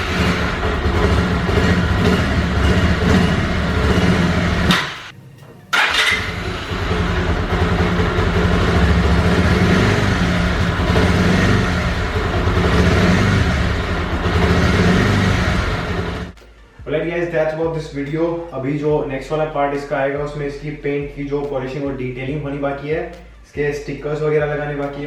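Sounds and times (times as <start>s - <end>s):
motorcycle engine running: 0.0s - 16.4s.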